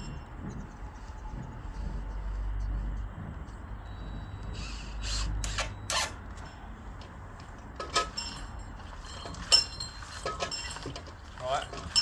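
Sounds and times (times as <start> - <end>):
low rumble: 0.0 - 5.6
knocks and clinks of bell gear: 7.8 - 12.0.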